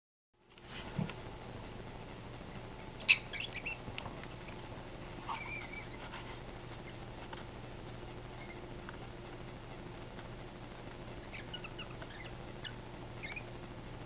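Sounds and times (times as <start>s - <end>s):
cockatiel warble: 2.5s - 3.8s, 5.2s - 7.0s, 8.3s - 8.7s, 11.2s - 13.5s
cockatiel chirps and clicks: 3.0s - 3.8s, 5.3s - 6.0s, 8.4s - 9.0s, 11.2s - 13.5s.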